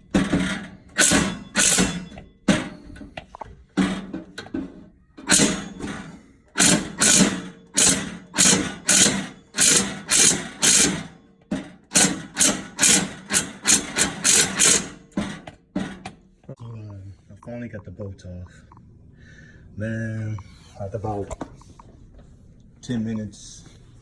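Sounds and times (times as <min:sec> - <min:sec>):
ratchet wrench cranking: 0:00.9 - 0:02.2, 0:05.3 - 0:11.2, 0:11.9 - 0:15.2.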